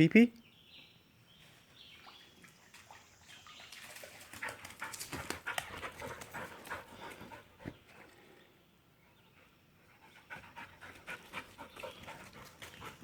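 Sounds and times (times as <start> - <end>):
dog panting: 4.3 - 8.0, 9.4 - 13.0.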